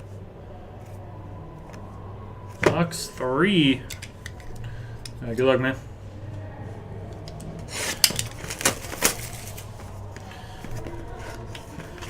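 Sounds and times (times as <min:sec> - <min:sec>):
low steady hum: 0:00.0 - 0:12.0
wrapping tearing: 0:07.7 - 0:10.1.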